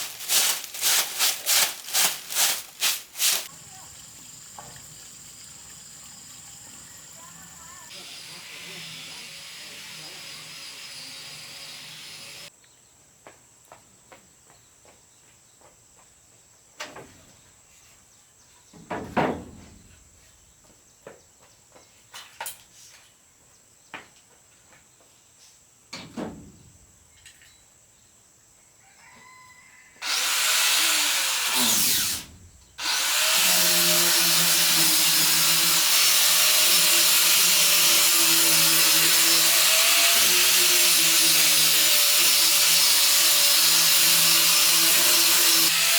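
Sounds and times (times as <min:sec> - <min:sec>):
power tool whining on wood: 0:06.3 - 0:12.5, 0:30.0 - 0:45.9.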